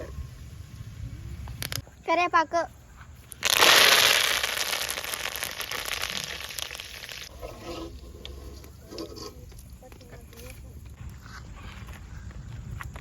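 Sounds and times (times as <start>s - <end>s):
hot oil sizzling: 3.4s - 7.3s.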